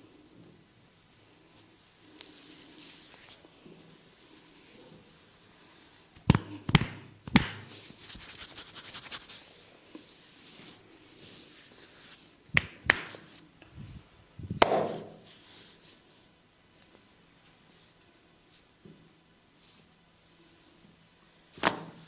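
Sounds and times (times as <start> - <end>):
soft rubbing and scratching: 1.1 - 6.2, 7.7 - 12.4, 14.9 - 19.0
hands tapping on head: 6.2 - 7.7, 12.6 - 13.2.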